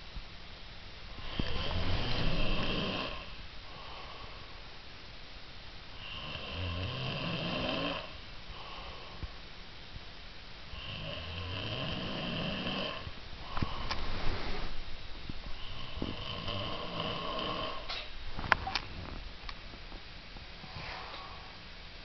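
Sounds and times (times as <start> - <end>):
snoring: 1.2 - 3.4, 6.0 - 8.2, 10.7 - 14.7, 15.6 - 17.9.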